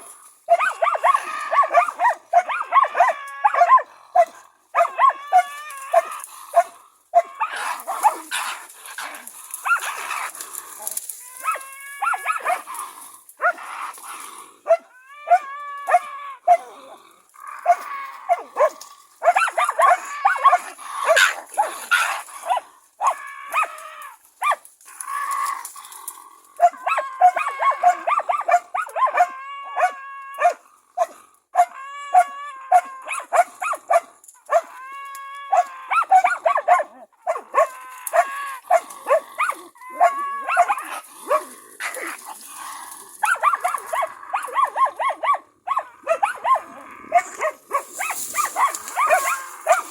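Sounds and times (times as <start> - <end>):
dogs barking sharply: 0.5 - 8.4, 11.4 - 12.7, 17.6 - 23.8, 26.6 - 34.7, 35.5 - 42.1, 43.2 - 49.9.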